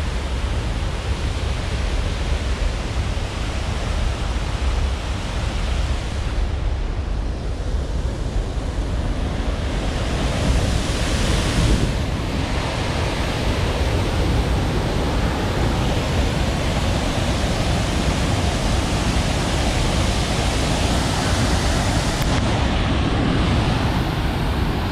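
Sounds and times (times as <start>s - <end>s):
water rushing: 0.0s - 24.9s.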